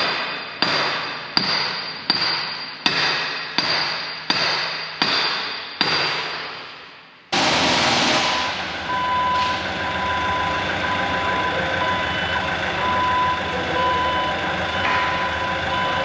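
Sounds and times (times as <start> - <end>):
diesel engine running: 7.4 - 16.0
backup alarm beeping: 7.6 - 16.0.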